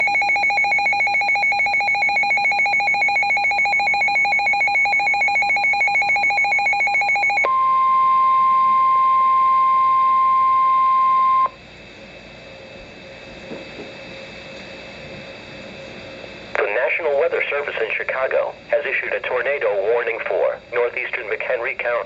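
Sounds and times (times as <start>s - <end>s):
rapidly pulsing electronic beep: 0.0s - 7.4s
steady single-pitch alarm tone: 0.0s - 11.7s.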